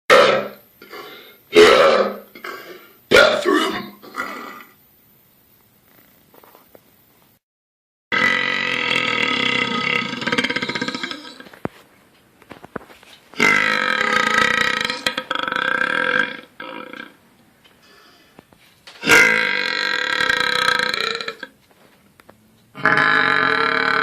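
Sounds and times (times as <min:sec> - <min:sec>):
person burping: 0:00.1 - 0:04.8, 0:08.1 - 0:11.6, 0:13.4 - 0:17.2, 0:19.0 - 0:21.6, 0:22.8 - 0:24.0.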